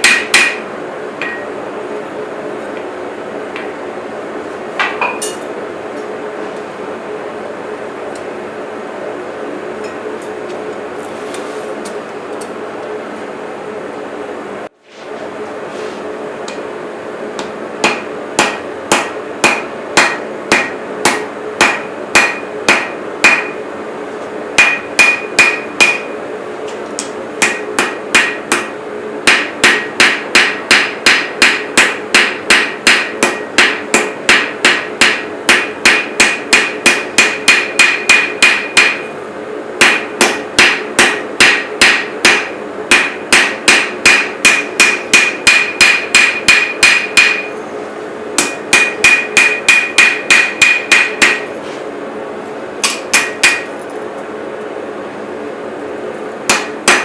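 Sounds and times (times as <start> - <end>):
hammer ringing on anvil: 0.0 - 0.6, 1.2 - 1.6, 17.8 - 23.6, 24.6 - 26.2, 27.4 - 28.7, 29.3 - 39.1, 39.8 - 47.6, 48.4 - 51.5, 52.8 - 53.7, 56.5 - 57.0
steady hum: 0.0 - 57.0.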